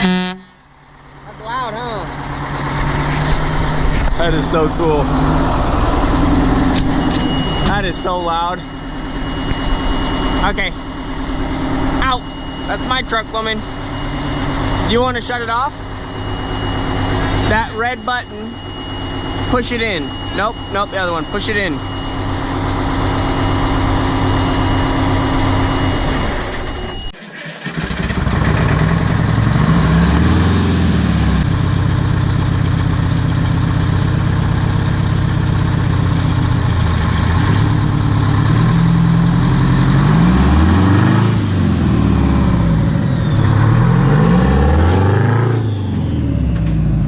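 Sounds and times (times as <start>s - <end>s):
steady high tone: 0.0s - 27.2s
diesel truck engine revving: 0.0s - 47.0s.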